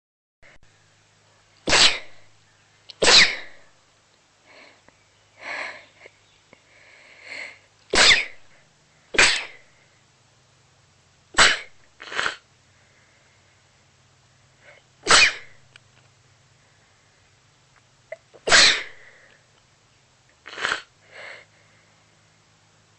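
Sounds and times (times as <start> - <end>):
person sneezing: 1.6 - 2.2, 3.0 - 3.7, 7.9 - 8.5, 9.2 - 9.7, 11.4 - 12.4, 14.6 - 15.6, 18.1 - 19.3, 20.4 - 21.5
breathy sounds: 4.4 - 7.7, 18.1 - 19.6, 20.4 - 22.3.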